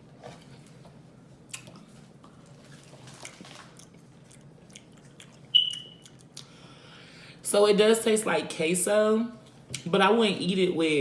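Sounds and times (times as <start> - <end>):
person chewing wet mouth sounds: 1.5 - 6.6
small mouth clicks: 3.8 - 6.5.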